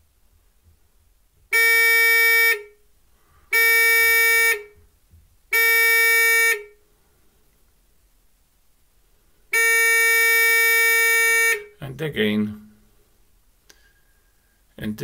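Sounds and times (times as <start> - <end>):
electronic buzzer beeps: 5.5 - 6.7, 9.6 - 11.7.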